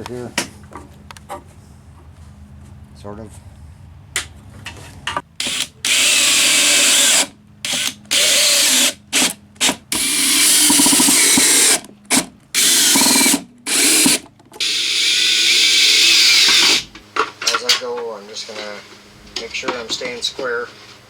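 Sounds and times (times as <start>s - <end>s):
power drill driving screws into wood: 5.4s - 16.9s.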